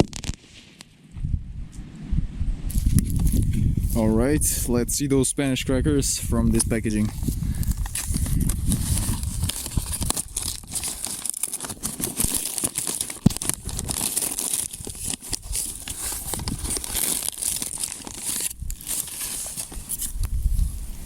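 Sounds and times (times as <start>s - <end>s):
packaging crinkling and tearing: 7.0s - 20.6s.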